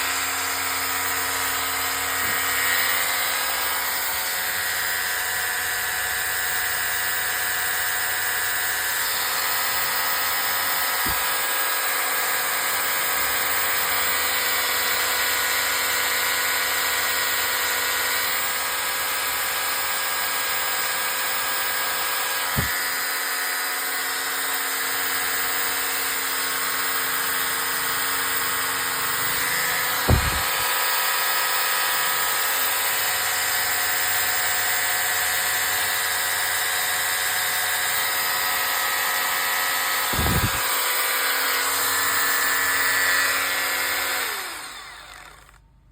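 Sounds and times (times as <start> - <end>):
drill motor running: 0.0 - 45.6.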